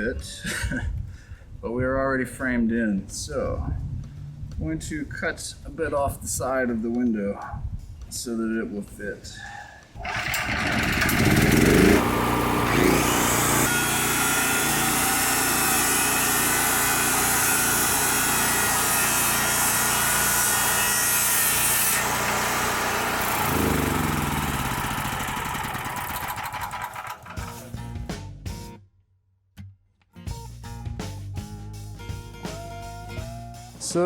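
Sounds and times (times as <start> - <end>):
electric power saw cutting wood: 10.0 - 27.7.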